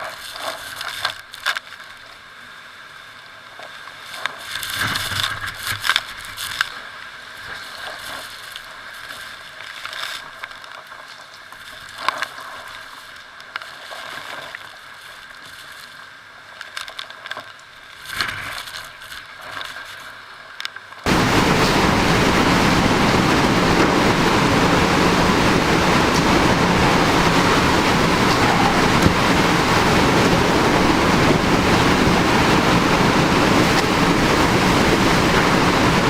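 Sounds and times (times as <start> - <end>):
hurricane wind buffeting microphone: 21.1 - 36.0.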